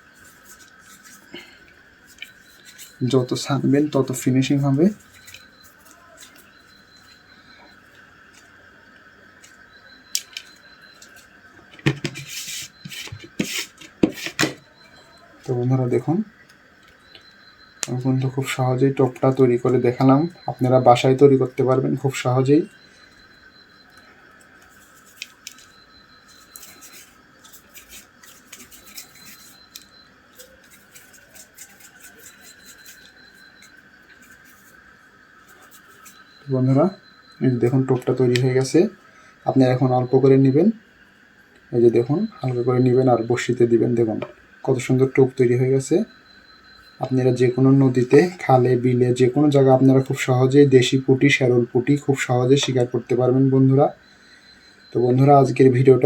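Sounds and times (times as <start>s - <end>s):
faint high hum: 0.0s - 56.0s
hands kneading dough on plate: 24.5s - 34.8s.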